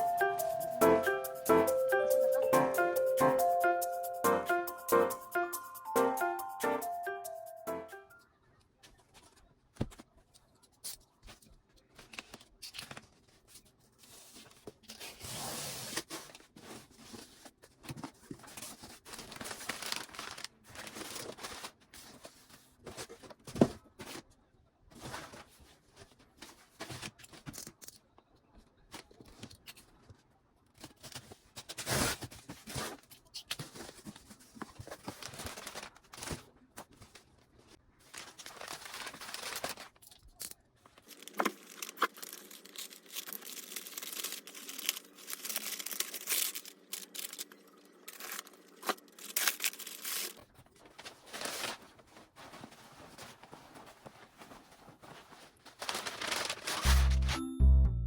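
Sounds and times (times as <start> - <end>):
material rustling and tearing: 30.8 - 40.4, 41.0 - 47.5, 48.1 - 57.4.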